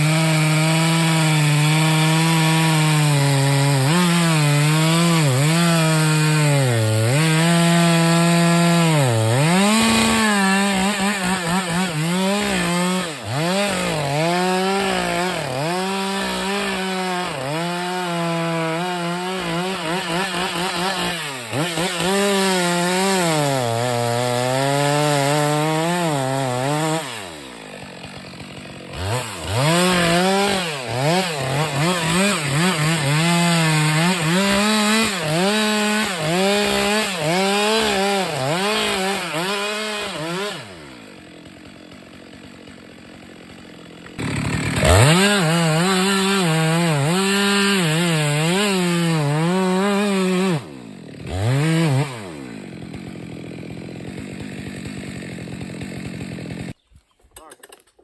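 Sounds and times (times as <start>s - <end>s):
chainsaw cutting wood: 0.0s - 58.0s.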